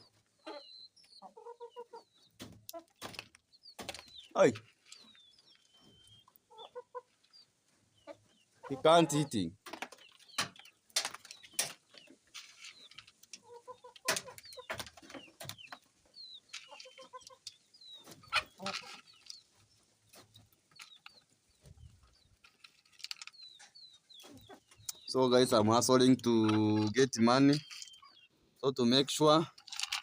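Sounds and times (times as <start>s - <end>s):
chickens clucking: 0.0s - 30.0s.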